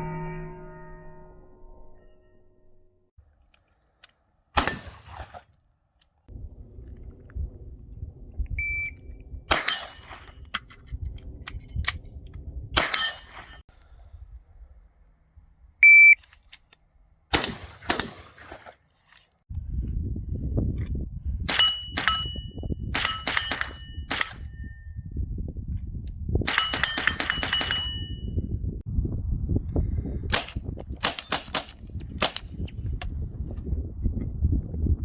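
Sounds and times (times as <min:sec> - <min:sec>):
gunshots: 0:04.6 - 0:05.5, 0:17.3 - 0:18.7
short beep: 0:08.6 - 0:09.0, 0:15.8 - 0:16.2
metallic ringing of hits: 0:21.5 - 0:24.9.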